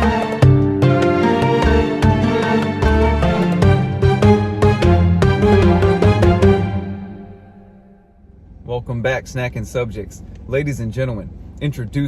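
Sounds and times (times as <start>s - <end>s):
intro music with steady beat: 0.0s - 8.0s.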